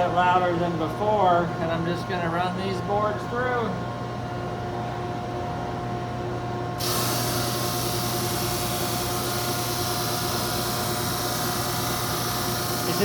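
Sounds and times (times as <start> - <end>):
belt sander and vacuum hum: 6.8 - 13.0
board being sanded hiss: 6.8 - 13.0.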